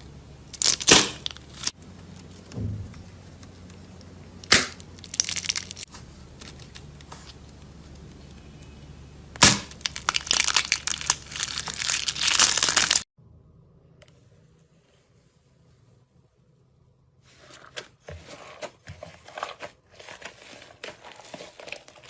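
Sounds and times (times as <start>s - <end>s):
crisp material crunching: 4.9s - 6.9s, 9.4s - 13.1s, 17.4s - 22.0s.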